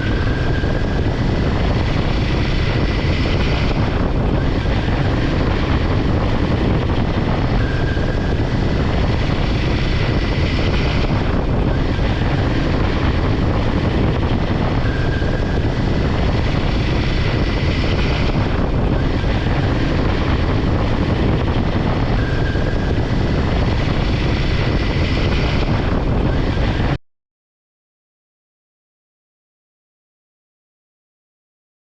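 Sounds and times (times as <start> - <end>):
wind and engine rushing noise: 0.0 - 27.0.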